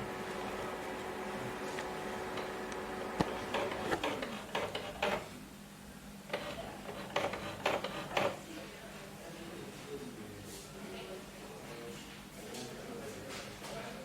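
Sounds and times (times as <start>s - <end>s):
printer clicking and clattering: 1.8s - 5.3s, 6.3s - 8.4s.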